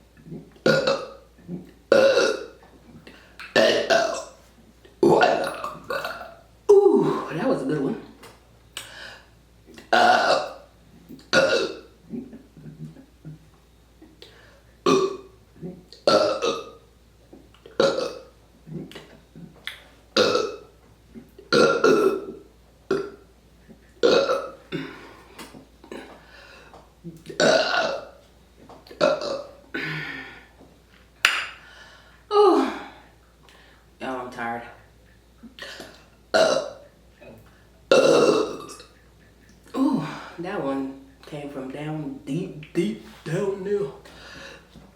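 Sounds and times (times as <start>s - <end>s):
person burping: 0.2s - 2.6s, 3.4s - 4.4s, 5.0s - 7.7s, 9.7s - 10.6s, 11.3s - 13.4s, 14.8s - 16.8s, 17.7s - 19.6s, 20.2s - 23.2s, 24.0s - 26.3s, 27.1s - 28.2s, 28.9s - 30.6s, 32.3s - 33.1s, 35.6s - 39.0s, 39.7s - 40.4s.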